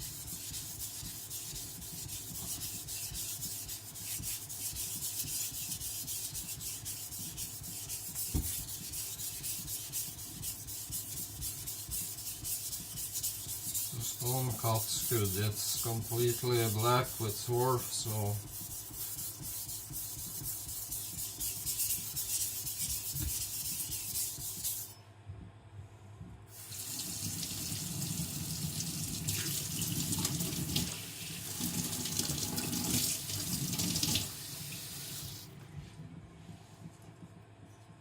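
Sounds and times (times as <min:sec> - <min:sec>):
water running from a tap: 0:26.6 - 0:35.5.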